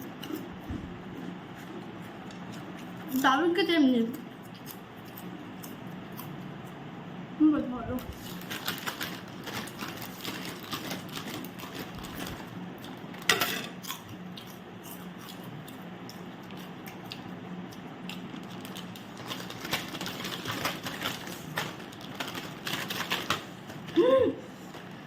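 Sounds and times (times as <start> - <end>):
steady low hum: 0.0 - 25.0
snacks crunching: 4.1 - 6.8, 13.8 - 23.5
plastic snack packet crinkling: 8.1 - 13.3, 18.2 - 24.0.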